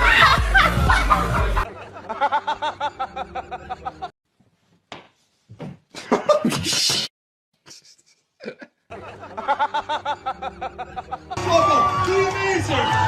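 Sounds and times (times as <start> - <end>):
person laughing: 6.0 - 11.4.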